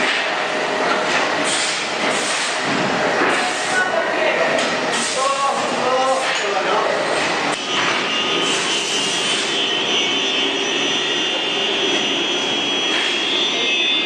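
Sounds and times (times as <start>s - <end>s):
machine running: 0.0s - 14.0s
high-pitched whine: 4.6s - 14.0s.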